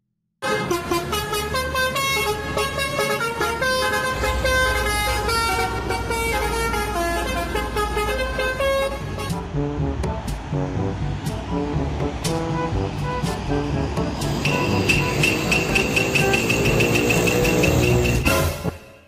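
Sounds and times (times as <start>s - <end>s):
multi-tone bus air horn: 0.4s - 9.9s, 11.5s - 19.0s
music: 0.4s - 19.0s
low vehicle rumble: 0.8s - 18.3s.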